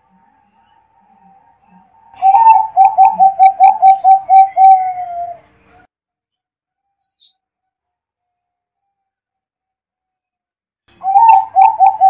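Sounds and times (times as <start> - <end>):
dove cooing: 2.2 - 5.5, 11.0 - 12.0.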